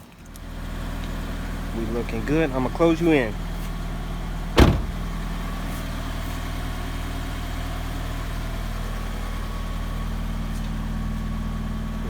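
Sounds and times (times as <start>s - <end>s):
car engine idling: 0.0s - 12.0s
car door shutting: 4.5s - 5.2s.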